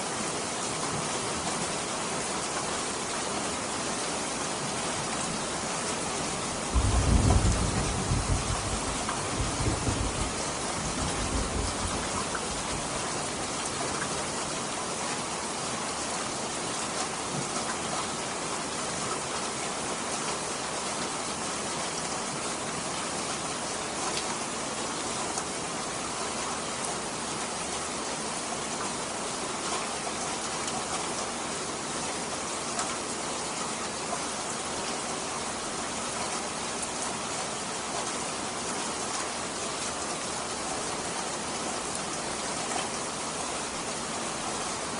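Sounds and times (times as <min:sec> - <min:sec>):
rain pouring: 0:00.0 - 0:44.9
low thunder rumble: 0:06.7 - 0:12.8.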